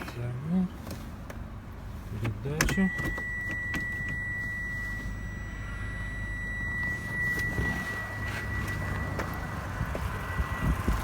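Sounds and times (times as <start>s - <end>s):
car engine idling: 0.0s - 11.0s
thin steady whistle: 3.2s - 9.6s.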